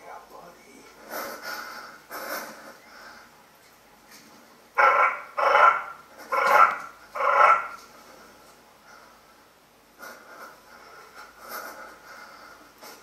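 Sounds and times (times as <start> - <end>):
dog barking: 4.8 - 7.8.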